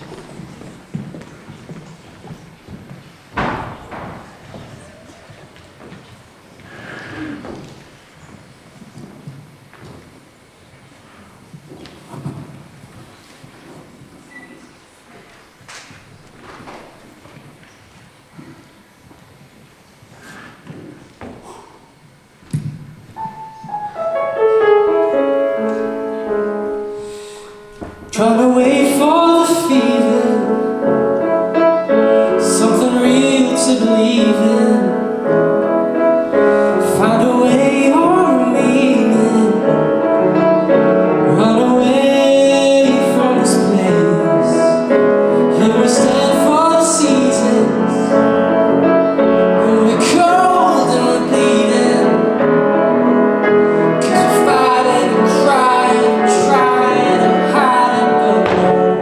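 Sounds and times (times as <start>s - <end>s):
piano accompaniment: 0.0s - 5.9s, 22.3s - 59.0s.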